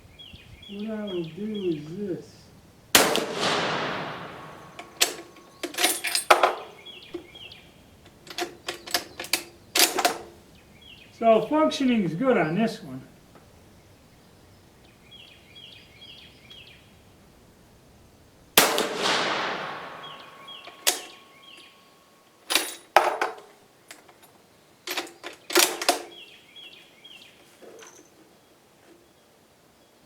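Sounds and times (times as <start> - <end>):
small birds chirping: 0.0 - 22.8, 23.6 - 30.0
rifle shot with echo: 2.9 - 6.8, 18.6 - 21.6.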